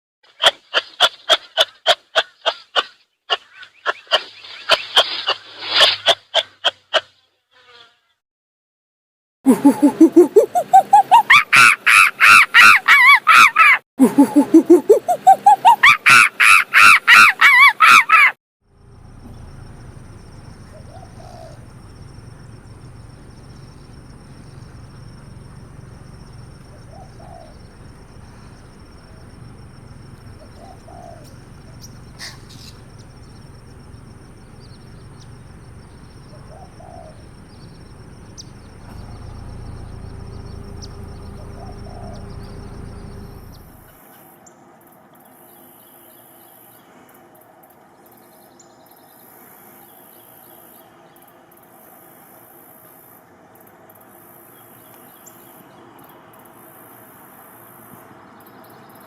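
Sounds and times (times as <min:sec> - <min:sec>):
faint bird calls: 0:09.5 - 0:13.8, 0:14.6 - 0:44.5
rapid loud animal calls: 0:09.7 - 0:13.8, 0:15.0 - 0:18.3, 0:19.2 - 0:43.9
low background hum: 0:18.7 - 0:44.0.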